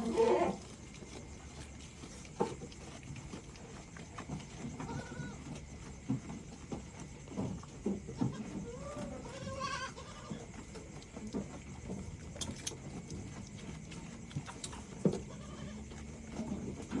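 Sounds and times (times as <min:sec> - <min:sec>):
goat bleating: 0:00.0 - 0:00.6, 0:04.8 - 0:05.4, 0:08.2 - 0:10.5, 0:15.1 - 0:15.9.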